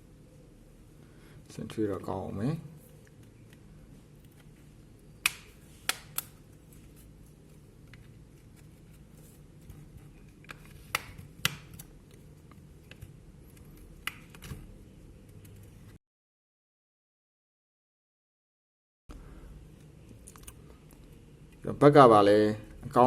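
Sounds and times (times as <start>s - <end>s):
faint steady hum: 0.0s - 16.0s, 19.1s - 23.0s.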